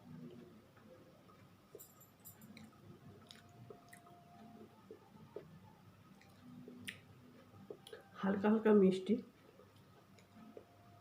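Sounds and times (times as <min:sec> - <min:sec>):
person chewing food: 0:02.5 - 0:08.0
wet mouth clicks: 0:06.2 - 0:07.1.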